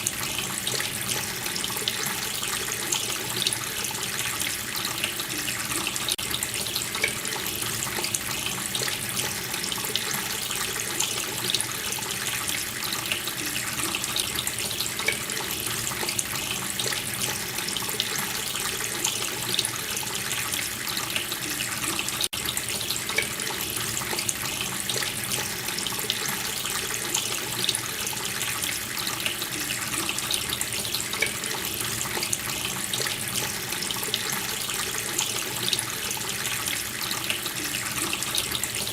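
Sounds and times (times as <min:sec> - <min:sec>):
tap water running and splashing: 0:00.0 - 0:38.9.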